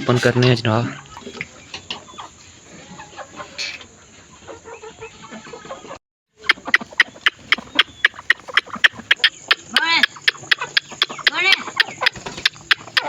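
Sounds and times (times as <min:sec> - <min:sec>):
chickens clucking: 0:00.0 - 0:13.0
fast sharp clicks: 0:06.4 - 0:13.0.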